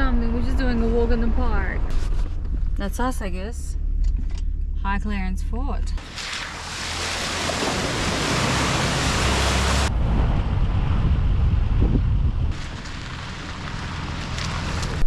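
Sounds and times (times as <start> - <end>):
engine and tyre rumble: 0.0 - 15.0
wind noise on microphone: 7.7 - 13.2.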